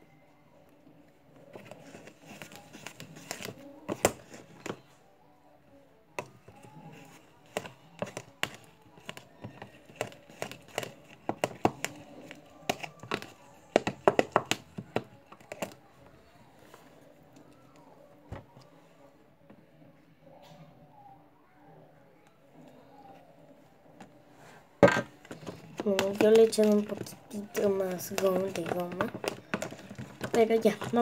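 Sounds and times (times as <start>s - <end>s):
stirrer scraping a container: 6.3s - 15.7s, 25.0s - 31.0s.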